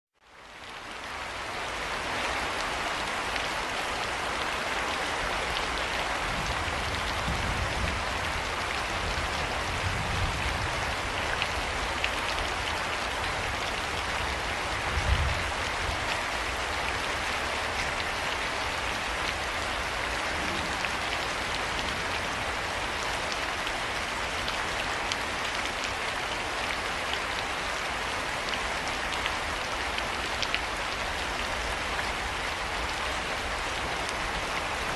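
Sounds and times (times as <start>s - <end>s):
steady rain falling: 0.2s - 34.9s
low thunder rumble: 20.2s - 22.4s.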